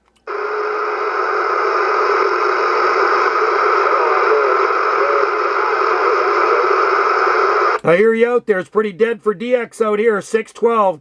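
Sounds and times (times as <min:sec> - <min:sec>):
loud radio static: 0:00.3 - 0:07.8.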